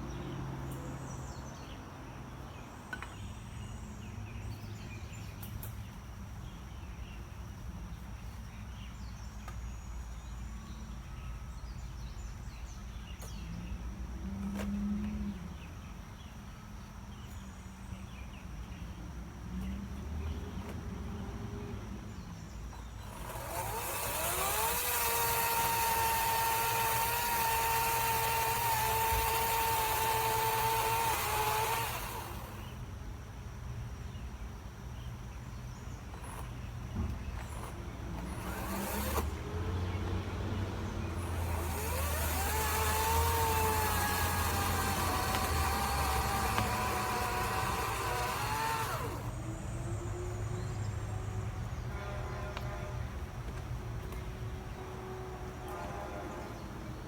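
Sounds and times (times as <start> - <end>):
chainsaw whining: 22.8 - 32.8, 37.4 - 40.2, 40.8 - 49.7
chainsaw chain hissing: 22.9 - 32.8, 37.4 - 39.7, 41.1 - 49.7.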